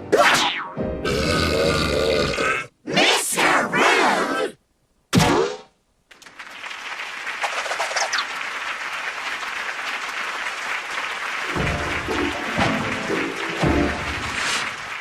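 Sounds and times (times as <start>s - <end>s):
music: 0.0s - 1.2s, 11.5s - 15.0s
audience applause: 6.1s - 15.0s.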